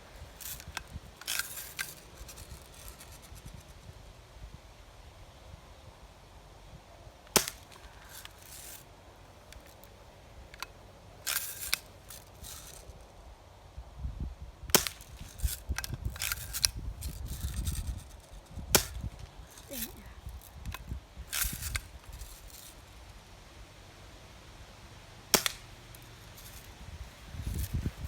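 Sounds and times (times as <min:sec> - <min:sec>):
clicks and rattles: 0:00.4 - 0:03.7, 0:10.5 - 0:13.0, 0:14.8 - 0:20.0
bb gun shots: 0:25.3 - 0:25.8.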